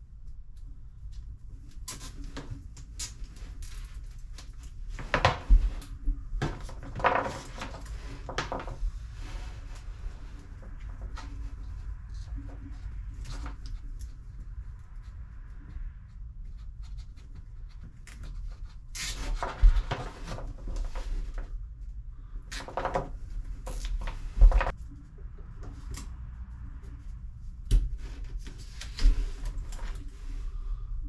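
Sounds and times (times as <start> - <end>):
rubbing and rustling handling noise: 0.3 - 31.0.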